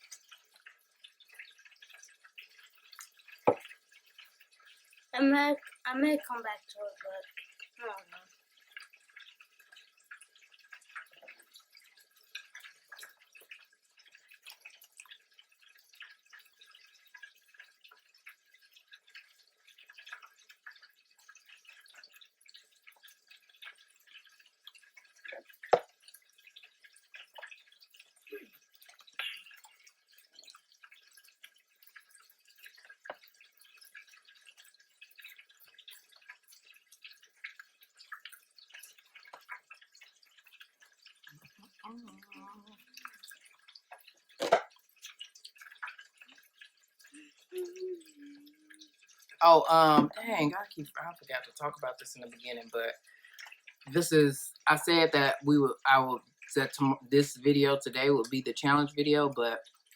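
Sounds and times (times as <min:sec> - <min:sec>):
wet chewing and lip-smacking: 0:00.0 - 0:05.8, 0:07.2 - 0:49.4.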